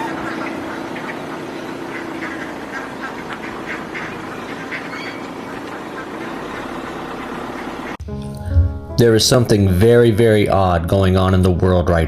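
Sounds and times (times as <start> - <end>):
birds calling: 0.0 - 8.0
steady low hum: 0.0 - 9.7.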